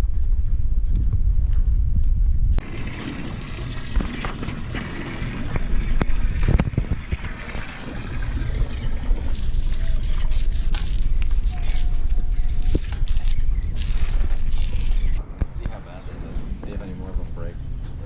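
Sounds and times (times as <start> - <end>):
wind on microphone: 0.0 - 2.8, 3.7 - 18.0
water sounds: 2.6 - 15.2.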